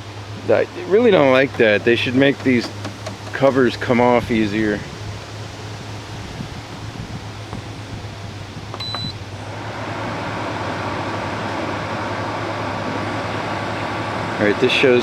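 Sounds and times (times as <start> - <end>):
fan running with air rush: 0.0 - 15.0
short electronic beep: 8.8 - 9.2.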